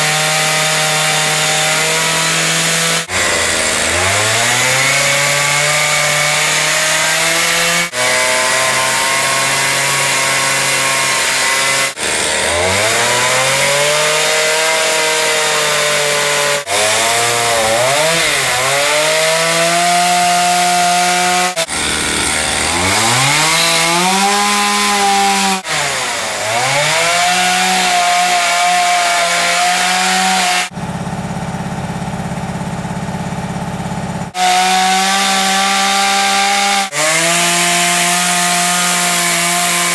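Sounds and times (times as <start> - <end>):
chainsaw cutting wood: 0.0 - 30.9, 33.8 - 39.9.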